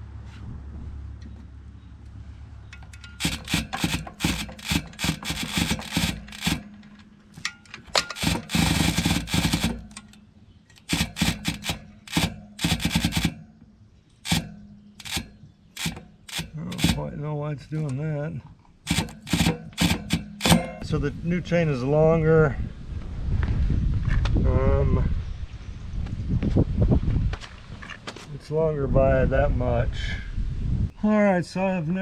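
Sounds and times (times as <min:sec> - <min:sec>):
bicycle chain clicking and rattling: 0:02.7 - 0:13.5, 0:14.2 - 0:17.1, 0:18.8 - 0:20.8.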